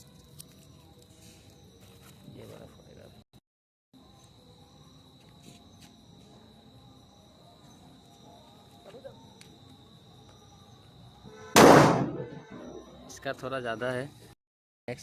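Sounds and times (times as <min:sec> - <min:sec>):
crickets chirping: 0:00.0 - 0:03.3, 0:04.0 - 0:15.0
firecracker bang: 0:11.5 - 0:12.7.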